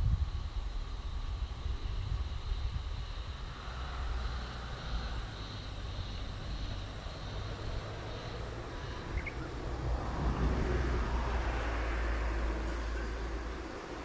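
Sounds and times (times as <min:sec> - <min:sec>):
high-pitched wavering insect call: 0:00.0 - 0:14.0.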